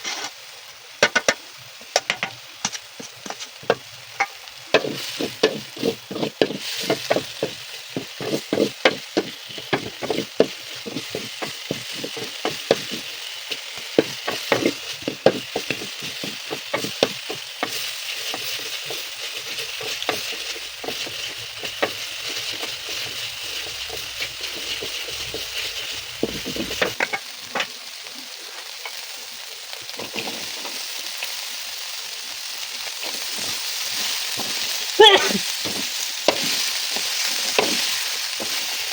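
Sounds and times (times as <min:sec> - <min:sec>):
food sizzling in hot oil: 0:00.0 - 0:38.9
utensil scraping a pan: 0:03.0 - 0:27.7, 0:33.1 - 0:38.9.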